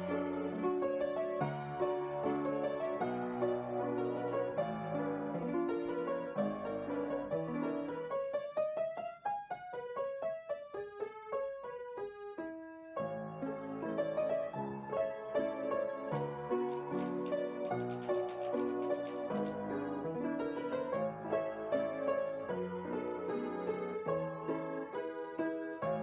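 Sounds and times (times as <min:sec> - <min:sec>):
piano music: 0:00.0 - 0:26.0.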